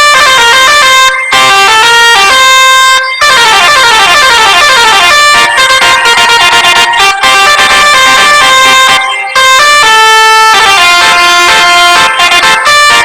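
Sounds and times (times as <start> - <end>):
musical bus horn tune: 0.0 - 13.0.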